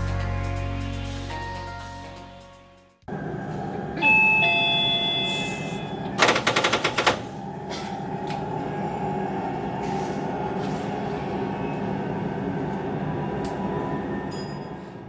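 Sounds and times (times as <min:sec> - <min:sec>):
bright two-note chime: 0:04.0 - 0:06.0
rapid electric bell ringing: 0:04.0 - 0:06.7.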